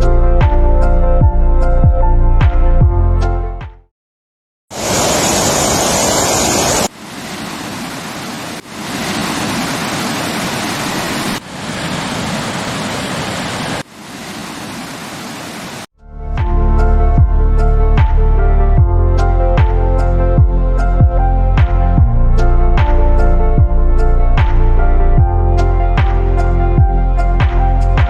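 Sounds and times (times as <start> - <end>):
waterfall rushing water: 4.8 - 15.9.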